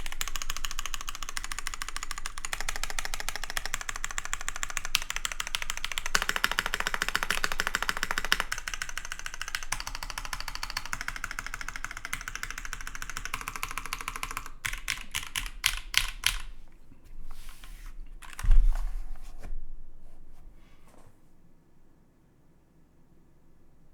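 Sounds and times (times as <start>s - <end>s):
fast typing on mechanical keyboard: 0.0s - 16.6s.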